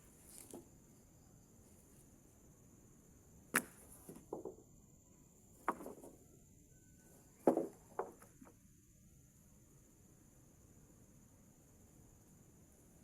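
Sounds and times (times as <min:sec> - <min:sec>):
sharp wooden knocks: 0:03.6 - 0:04.6, 0:05.6 - 0:06.2, 0:07.4 - 0:08.5.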